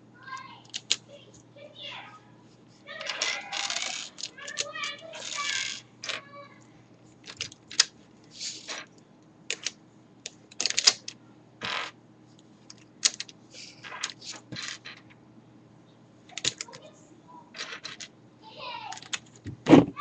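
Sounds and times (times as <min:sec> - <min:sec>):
plastic puzzle cube clicking: 0:00.7 - 0:01.0, 0:03.6 - 0:05.8, 0:09.5 - 0:09.7, 0:10.5 - 0:11.1, 0:13.0 - 0:13.3.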